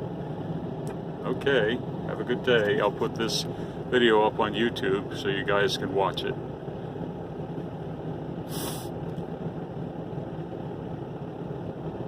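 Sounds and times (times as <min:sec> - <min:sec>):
brief hiss: 0:08.5 - 0:09.0.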